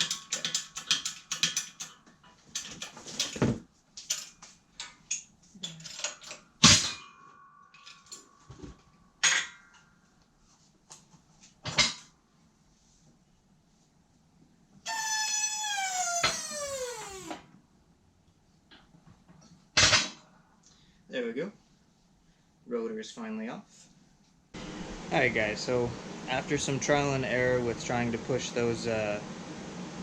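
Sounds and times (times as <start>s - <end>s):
metal parts clattering: 0.0s - 7.1s, 7.7s - 9.5s.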